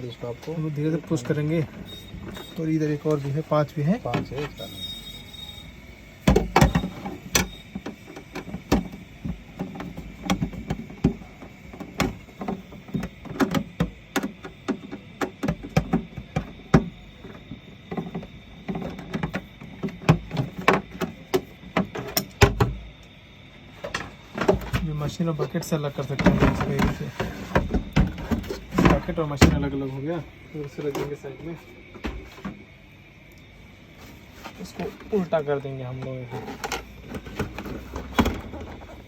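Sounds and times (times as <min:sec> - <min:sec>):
plastic housing knocks and clatter: 0:06.2 - 0:22.8, 0:26.2 - 0:29.8, 0:36.3 - 0:39.0.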